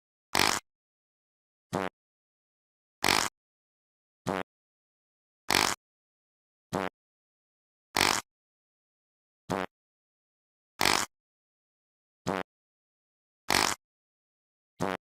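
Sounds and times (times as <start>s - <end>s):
fart sound effects: 0.3s - 0.6s, 1.7s - 1.9s, 3.0s - 3.3s, 4.3s - 4.5s, 5.5s - 5.8s, 6.7s - 6.9s, 8.0s - 8.3s, 9.5s - 9.7s, 10.8s - 11.1s, 12.3s - 12.5s, 13.5s - 13.8s, 14.8s - 15.0s.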